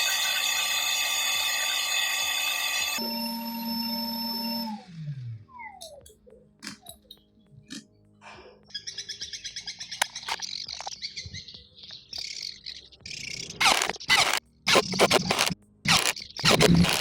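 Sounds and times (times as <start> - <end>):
bird chirping trill: 8.6 - 15.0.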